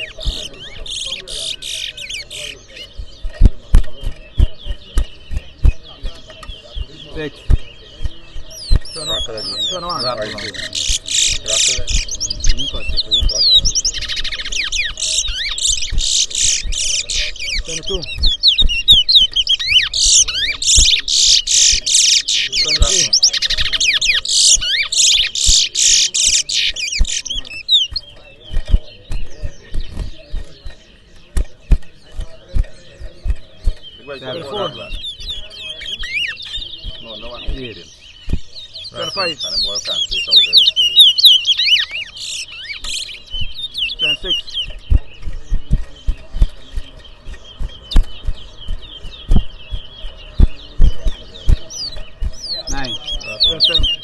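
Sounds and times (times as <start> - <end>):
finch singing: 0.0 - 54.0
dull low thumps: 2.6 - 21.1, 26.7 - 39.2, 43.3 - 54.0.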